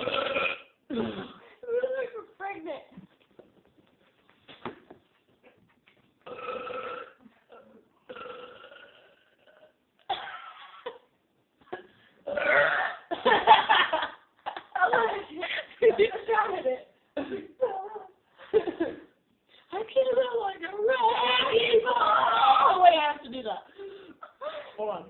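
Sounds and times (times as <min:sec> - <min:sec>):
person burping: 0:00.0 - 0:02.0, 0:06.2 - 0:10.6, 0:11.8 - 0:13.1.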